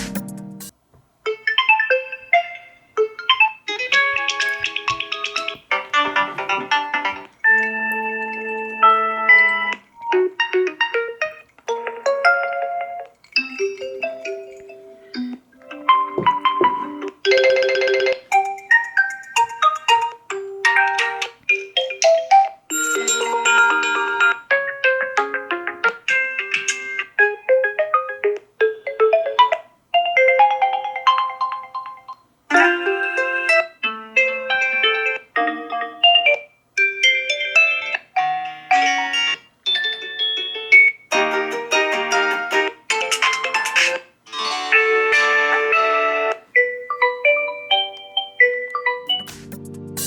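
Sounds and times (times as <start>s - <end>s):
phone alarm chime tunes: 22.7s - 24.3s
phone alarm melody: 45.6s - 50.0s.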